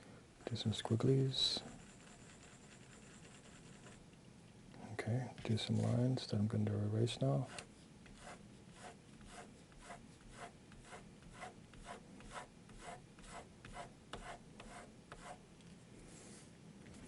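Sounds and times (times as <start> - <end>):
pencil scratching on paper: 1.7 - 4.0, 7.4 - 15.4.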